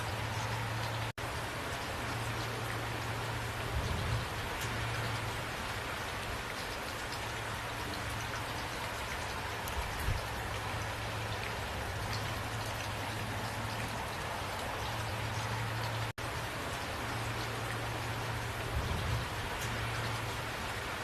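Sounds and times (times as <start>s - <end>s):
steady rain falling: 0.0s - 21.0s.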